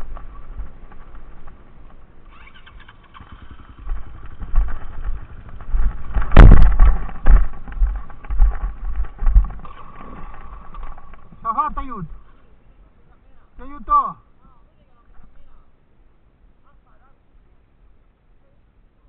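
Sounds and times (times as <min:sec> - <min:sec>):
motorcycle engine running: 0:00.0 - 0:12.4
low thumps and knocks: 0:03.8 - 0:12.2
loud thud: 0:05.9 - 0:09.8.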